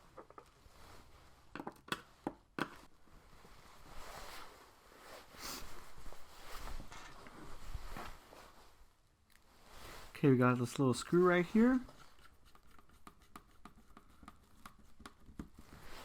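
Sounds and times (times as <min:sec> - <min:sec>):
scraping and rustling: 0:03.3 - 0:08.8.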